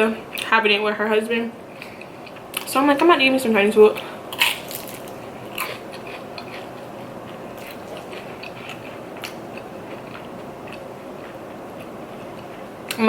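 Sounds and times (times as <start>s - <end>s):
person chewing food: 1.7s - 2.7s, 4.0s - 13.0s.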